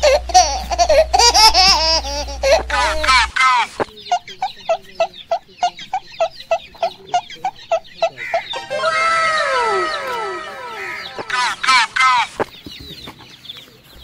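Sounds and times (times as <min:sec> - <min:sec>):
chicken clucking: 0:03.9 - 0:13.4.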